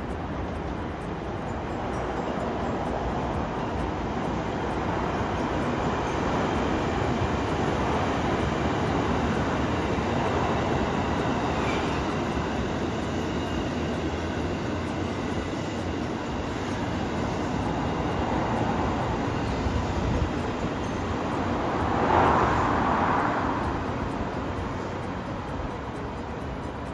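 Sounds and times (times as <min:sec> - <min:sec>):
train wheels on rails: 0:00.0 - 0:26.9.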